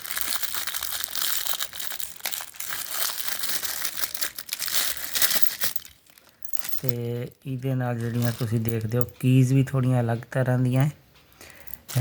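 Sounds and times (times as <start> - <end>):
paper crinkling and rustling: 0.0 - 7.1, 7.9 - 9.0.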